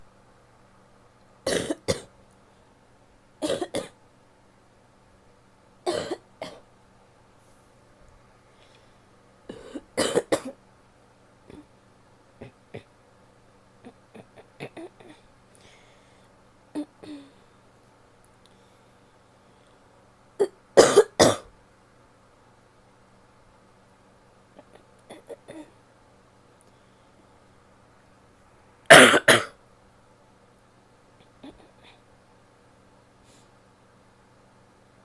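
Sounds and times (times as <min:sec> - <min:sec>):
woman coughing: 0:01.5 - 0:02.1, 0:03.4 - 0:03.9, 0:05.9 - 0:06.6, 0:09.5 - 0:10.6, 0:20.4 - 0:21.5, 0:28.9 - 0:29.6.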